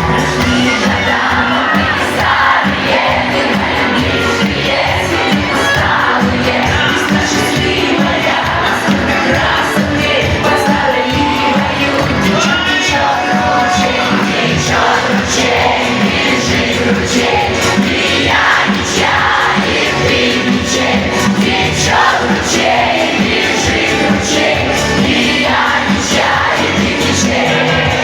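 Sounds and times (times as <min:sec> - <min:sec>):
audience: 0:00.0 - 0:28.0
live folk-pop music through pa: 0:00.0 - 0:28.0
person singing: 0:00.0 - 0:28.0.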